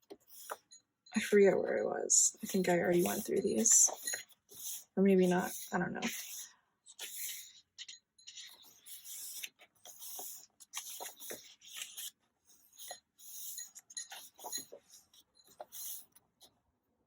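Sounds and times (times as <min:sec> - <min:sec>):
paper pages rustling: 0:09.4 - 0:12.1.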